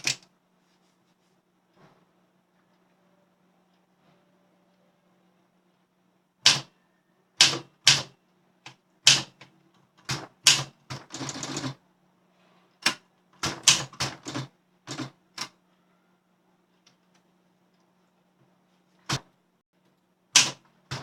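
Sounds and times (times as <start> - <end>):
rapid typewriter rattle: 0.0 - 0.2, 6.4 - 6.7, 7.4 - 8.2, 9.0 - 9.4, 10.0 - 11.8, 12.8 - 15.5, 20.3 - 21.0
typewriter key strikes: 6.5 - 6.7, 7.4 - 8.1, 9.0 - 9.4, 10.0 - 11.7, 20.4 - 21.0.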